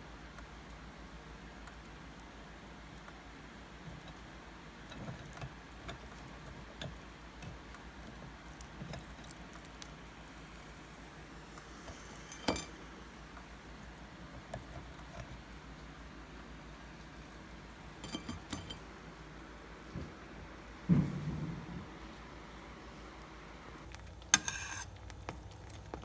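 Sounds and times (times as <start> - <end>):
kitchen clicks and taps: 18.0 - 18.8.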